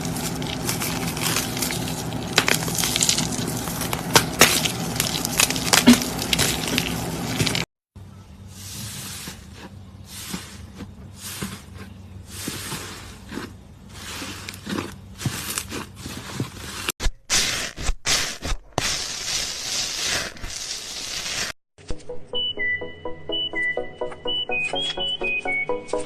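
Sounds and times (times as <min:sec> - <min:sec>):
crunchy slime squeezed by hand: 0:00.0 - 0:07.6.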